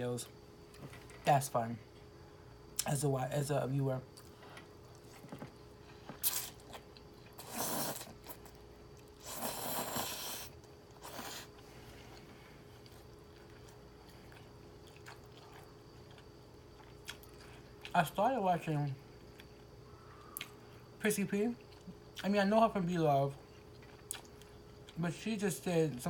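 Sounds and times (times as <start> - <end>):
person chewing noodles: 4.2 - 17.9, 23.5 - 25.0.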